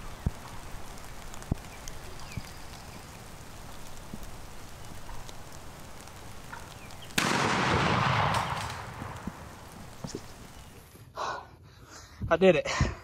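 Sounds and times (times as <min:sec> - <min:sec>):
shotgun shot: 0:07.2 - 0:09.2.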